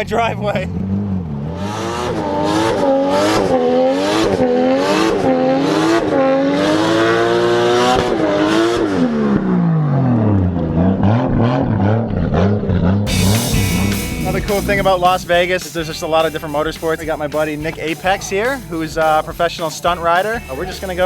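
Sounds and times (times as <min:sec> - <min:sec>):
car engine revving hard: 0:00.6 - 0:14.8.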